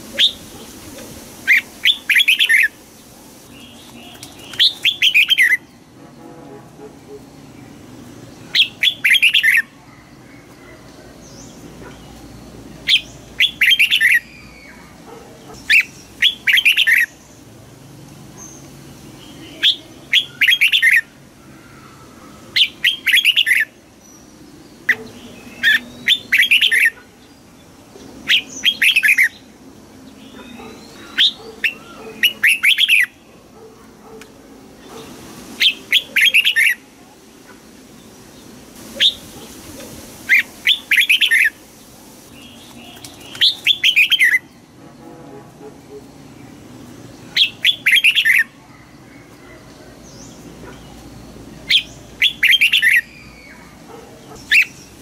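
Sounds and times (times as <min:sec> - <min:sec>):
bird singing: 0:03.5 - 0:05.9, 0:08.5 - 0:17.5, 0:18.4 - 0:33.4, 0:42.3 - 0:44.7, 0:45.9 - 0:55.0.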